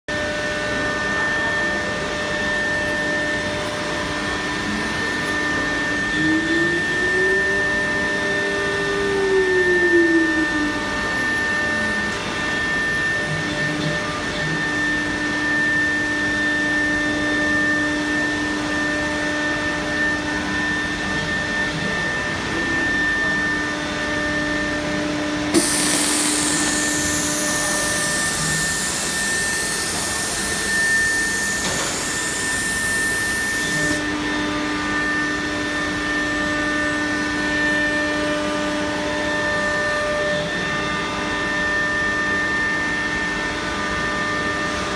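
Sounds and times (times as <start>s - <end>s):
router spindle whine: 0.1s - 40.8s
motors humming: 25.5s - 34.0s
loud hiss: 25.6s - 32.8s.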